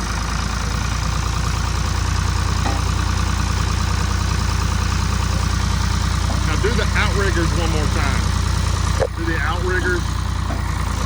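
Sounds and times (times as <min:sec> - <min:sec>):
diesel engine running: 0:00.0 - 0:11.0
engine whine: 0:00.0 - 0:11.0.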